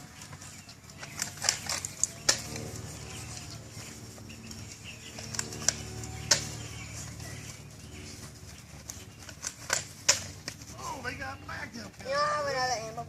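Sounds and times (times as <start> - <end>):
low steady hum: 0.0 - 13.0
sharp clicks and knocks: 8.8 - 10.7.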